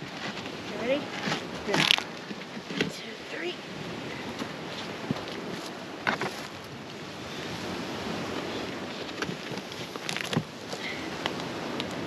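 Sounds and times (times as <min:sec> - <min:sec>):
rushing wind: 0:00.0 - 0:12.0.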